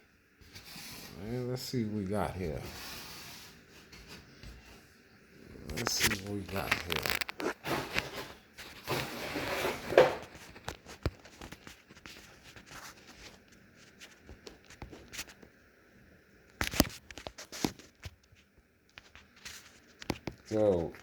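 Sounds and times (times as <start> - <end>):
packaging rustling: 5.7 - 15.4.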